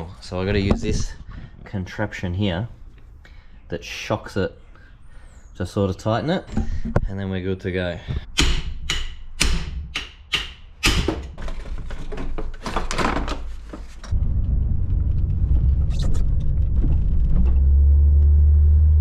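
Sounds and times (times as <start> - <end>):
impact wrench sharp knocks: 8.2 - 11.3.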